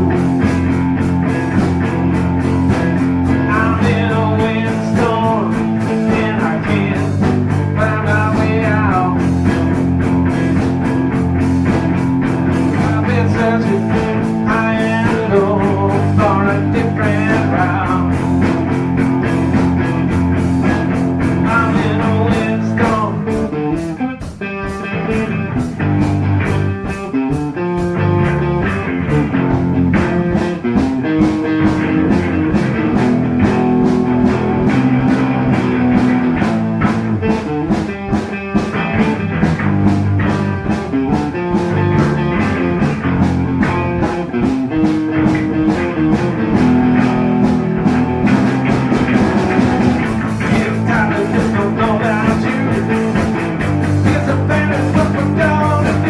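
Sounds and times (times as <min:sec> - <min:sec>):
rock band instrumental: 0:00.0 - 0:56.0.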